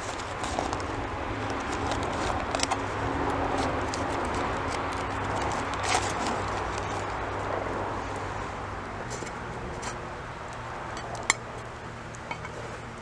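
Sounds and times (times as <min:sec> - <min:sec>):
campfire crackling and popping: 0:00.0 - 0:13.0
outdoor background hiss: 0:03.8 - 0:13.0.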